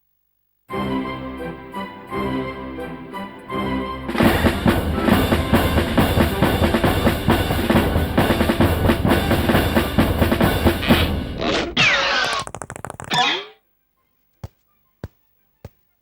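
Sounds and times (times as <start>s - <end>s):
fast drum kit playing: 4.2s - 11.4s.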